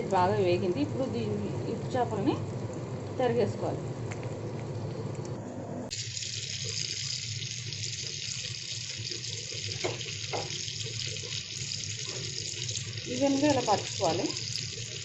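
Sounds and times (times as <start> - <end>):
fish sizzling in hot oil: 5.9 - 15.0
utensil knocking against pan: 9.8 - 10.6.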